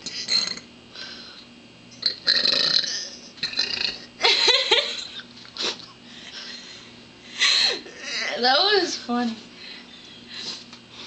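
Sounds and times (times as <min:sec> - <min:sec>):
woman burping: 0:00.0 - 0:00.7, 0:02.0 - 0:05.9.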